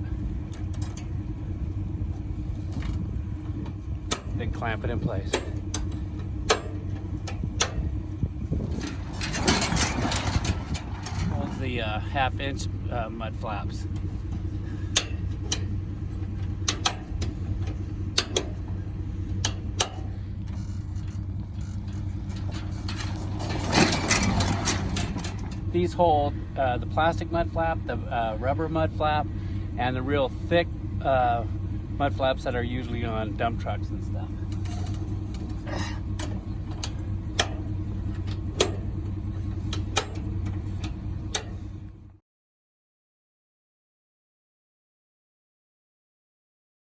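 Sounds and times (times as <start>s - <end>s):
metal hardware clicking: 0.0s - 25.6s
metal hardware rattling: 0.0s - 25.7s
vehicle engine idling: 0.0s - 42.2s.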